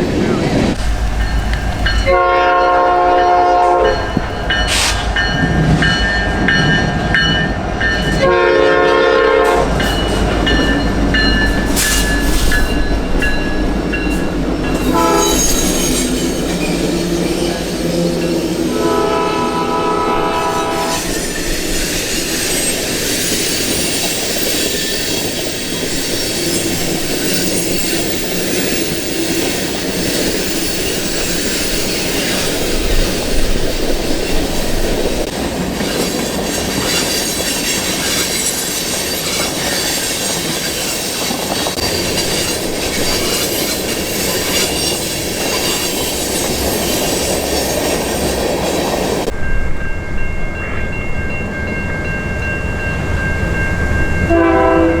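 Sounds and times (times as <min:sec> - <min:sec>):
train wheels clattering: 0:00.0 - 0:49.4
train cars rumbling past: 0:00.0 - 0:55.0
train wheels squealing: 0:09.8 - 0:18.7, 0:20.5 - 0:49.6.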